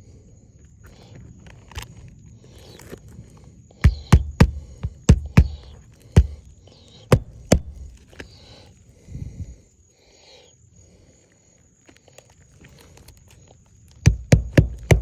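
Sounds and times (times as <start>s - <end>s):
faint handling sounds: 0.6s - 3.7s, 11.2s - 14.0s
sharp knocks: 3.8s - 6.4s, 7.1s - 7.9s, 14.1s - 15.0s.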